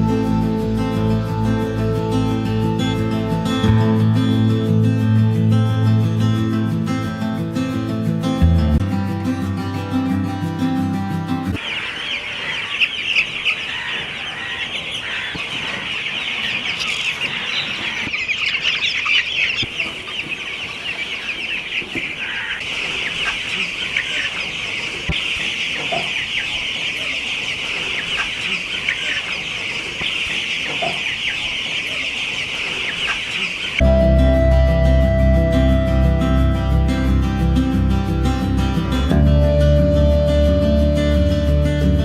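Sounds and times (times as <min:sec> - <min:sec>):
chickens chirping and clucking: 0:11.5 - 0:33.8.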